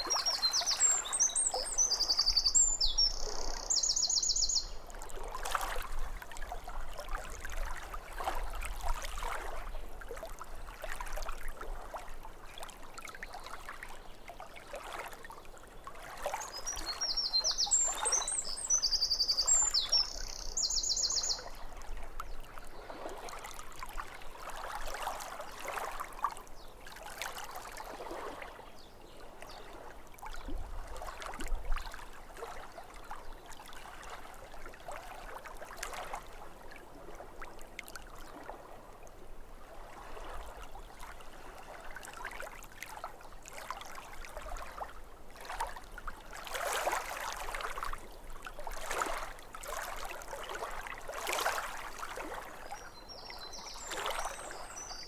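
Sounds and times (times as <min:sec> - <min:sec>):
songbird singing with fast trill: 0:00.0 - 0:04.8, 0:16.4 - 0:21.6, 0:52.7 - 0:55.0
small waves lapping at shore: 0:00.0 - 0:55.0.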